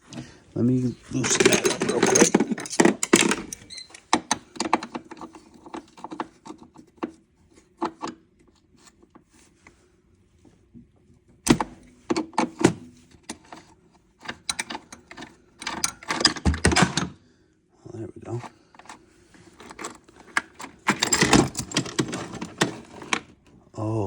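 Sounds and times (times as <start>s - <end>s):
tools clicking and knocking on metal: 1.2s - 8.2s, 11.5s - 17.2s, 18.8s - 23.3s.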